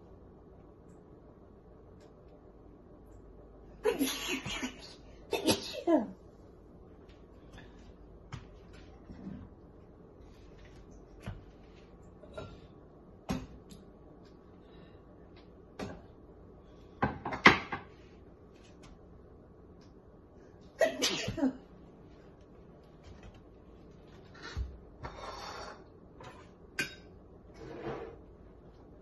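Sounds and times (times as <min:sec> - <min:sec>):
kitchen knocks and clicks: 0:17.0 - 0:17.9.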